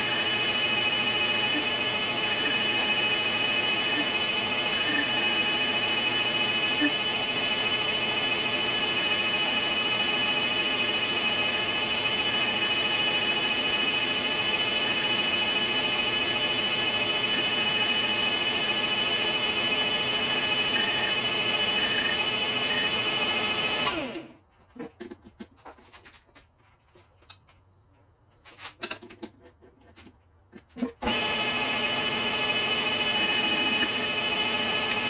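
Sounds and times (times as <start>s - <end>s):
machine whining steadily: 0.0s - 24.4s.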